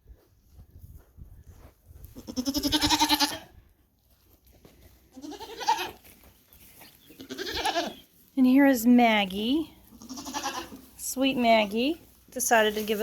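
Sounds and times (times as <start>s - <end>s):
goats bleating: 2.2s - 3.5s, 5.1s - 6.1s, 7.2s - 8.0s, 9.8s - 10.8s.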